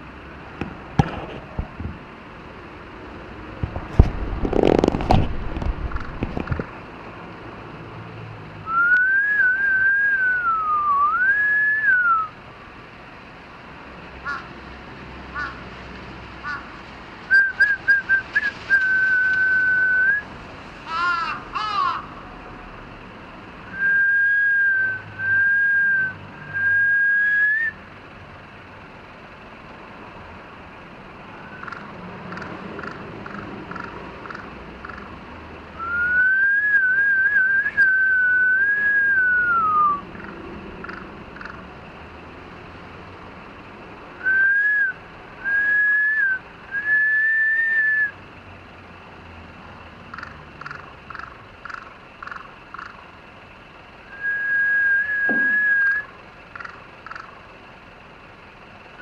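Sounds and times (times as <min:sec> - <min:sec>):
crow whistle-like calls: 0:08.7 - 0:12.4, 0:17.3 - 0:20.2, 0:35.8 - 0:41.6, 0:54.1 - 0:57.4.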